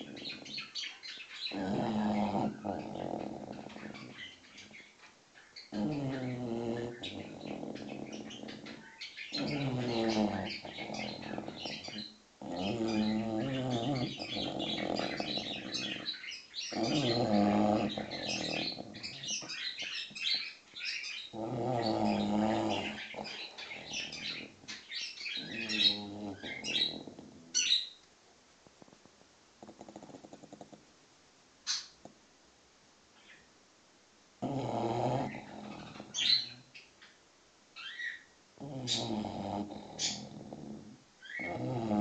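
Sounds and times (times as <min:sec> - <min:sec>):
dog snoring: 0:00.0 - 0:00.7, 0:01.5 - 0:04.8, 0:05.7 - 0:20.4, 0:21.3 - 0:27.8, 0:29.6 - 0:30.8, 0:34.4 - 0:36.6, 0:38.6 - 0:42.0
birds chirping: 0:00.0 - 0:28.0, 0:31.6 - 0:32.0, 0:34.4 - 0:37.2, 0:37.8 - 0:42.0.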